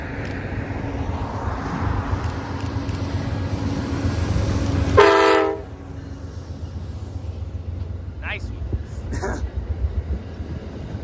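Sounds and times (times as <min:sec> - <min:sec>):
diesel locomotive rumbling: 0:00.0 - 0:11.0
locomotive horn blast: 0:04.9 - 0:05.8.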